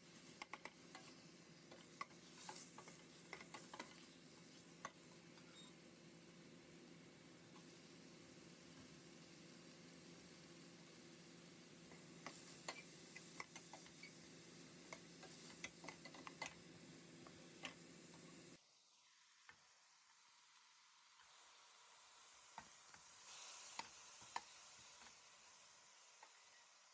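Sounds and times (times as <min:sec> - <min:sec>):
faint steady hiss: 0:00.0 - 0:26.9.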